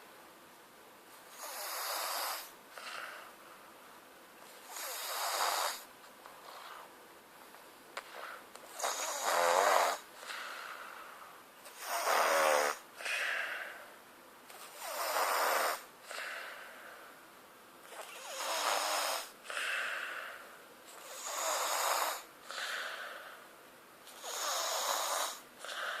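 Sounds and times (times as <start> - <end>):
person snoring: 4.6 - 5.9, 8.2 - 11.0, 11.7 - 13.9, 14.7 - 16.6, 17.9 - 20.4, 21.0 - 23.4, 24.1 - 26.0.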